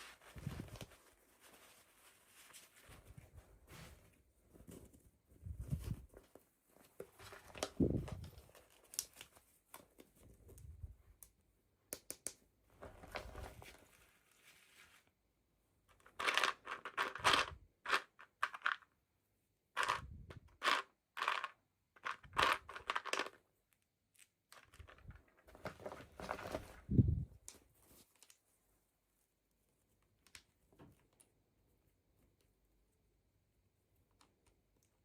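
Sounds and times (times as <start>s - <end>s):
plastic and cardboard crinkling: 24.6s - 28.5s.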